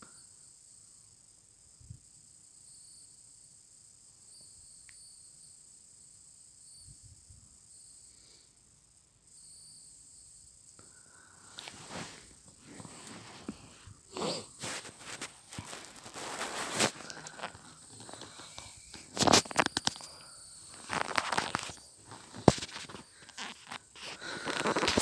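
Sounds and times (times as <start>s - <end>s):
rustling and scraping: 11.4s - 25.0s.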